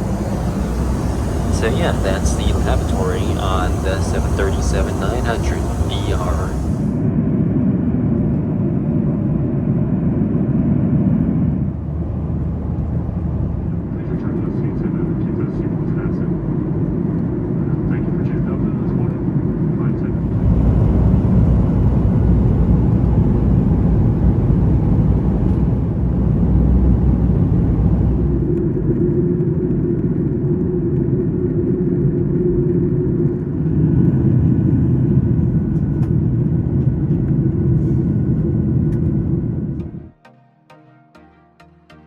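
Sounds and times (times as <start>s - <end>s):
low hum: 0.0s - 7.0s, 20.0s - 29.2s
jet engine cabin rumble: 0.0s - 7.1s, 8.3s - 16.6s, 17.8s - 40.1s.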